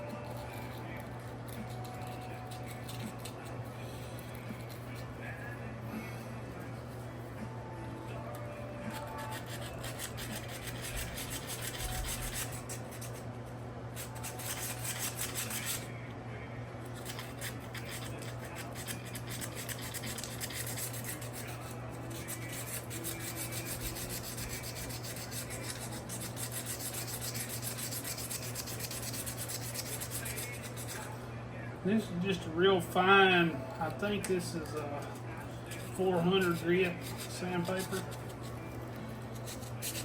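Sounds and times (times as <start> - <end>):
sandpaper rubbing on metal: 0.0 - 3.4, 8.9 - 13.2, 14.0 - 15.9, 17.0 - 31.1, 35.7 - 38.6, 39.3 - 40.0.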